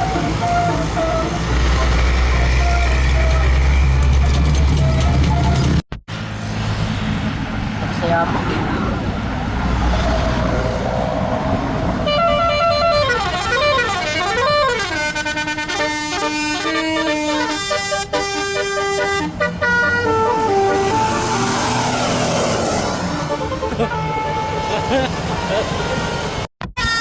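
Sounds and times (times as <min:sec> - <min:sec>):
bus horn playing a melody: 0:00.0 - 0:03.8, 0:12.0 - 0:21.8, 0:22.9 - 0:27.0
bus engine: 0:00.0 - 0:26.5
traffic noise: 0:00.0 - 0:26.5.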